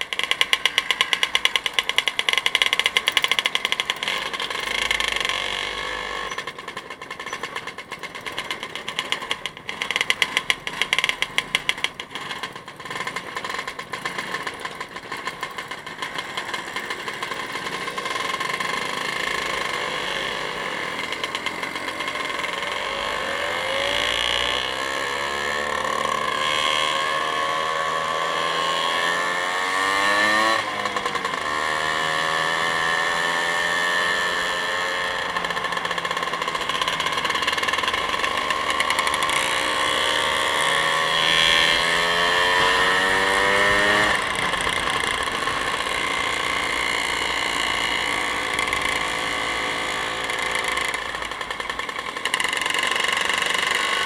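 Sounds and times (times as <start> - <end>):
motorcycle engine accelerating: 0.0 - 54.0
wind and road noise: 29.7 - 54.0.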